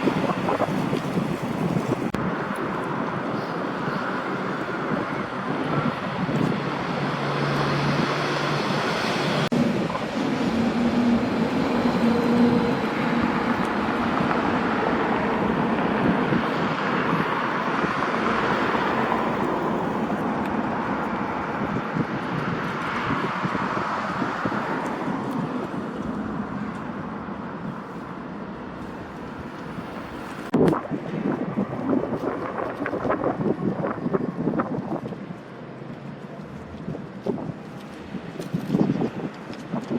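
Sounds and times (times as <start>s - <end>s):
locomotive engine drone: 2.1s - 38.4s
train wheels on rails: 4.0s - 16.4s.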